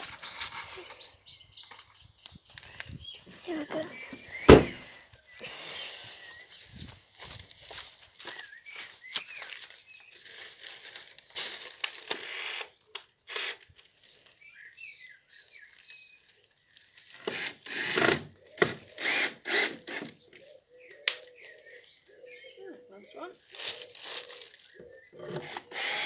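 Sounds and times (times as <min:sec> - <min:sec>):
small birds chirping: 0:00.0 - 0:11.1, 0:12.6 - 0:17.3, 0:18.3 - 0:26.0
power screwdriver driving screws: 0:17.2 - 0:20.2, 0:25.2 - 0:26.0.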